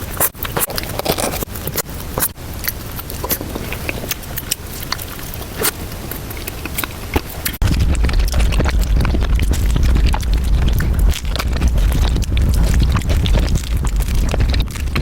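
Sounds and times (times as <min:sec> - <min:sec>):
loud chewing and crunching: 0:00.0 - 0:15.0
heavy low rumble: 0:07.6 - 0:15.0.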